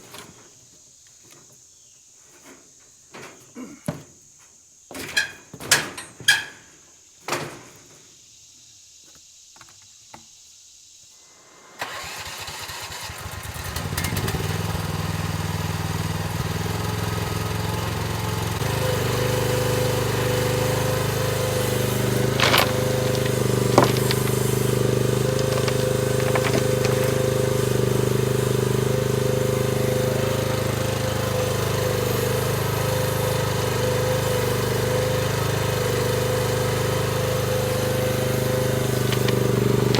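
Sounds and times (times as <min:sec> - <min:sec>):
excavator engine starting and running: 0:13.7 - 0:39.9
knocks: 0:22.4 - 0:24.5, 0:25.2 - 0:27.4.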